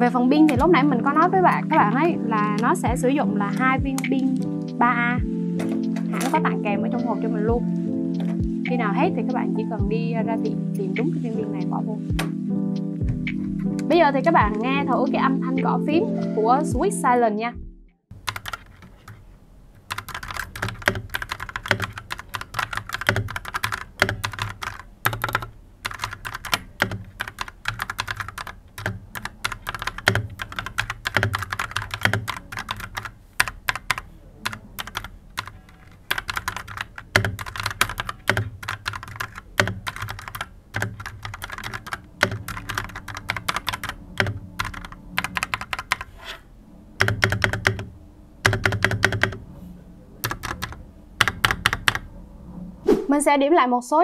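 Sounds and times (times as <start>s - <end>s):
fast typing on mechanical keyboard: 18.2s - 19.2s, 19.8s - 46.1s, 47.0s - 49.4s, 50.2s - 52.1s.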